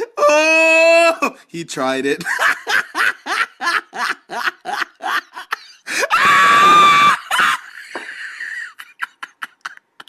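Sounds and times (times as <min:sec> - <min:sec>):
person laughing hard: 0:02.2 - 0:10.0.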